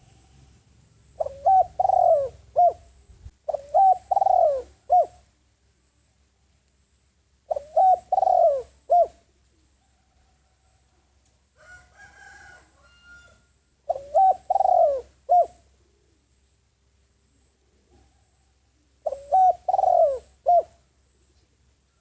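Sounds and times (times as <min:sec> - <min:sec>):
dove cooing: 0:01.1 - 0:05.3, 0:07.5 - 0:09.4, 0:13.8 - 0:16.3, 0:18.8 - 0:21.6.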